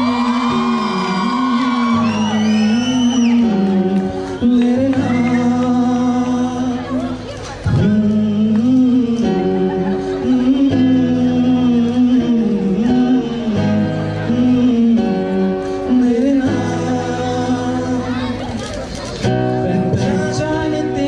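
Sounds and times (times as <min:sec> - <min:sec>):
strummed acoustic guitar: 0:00.0 - 0:21.0.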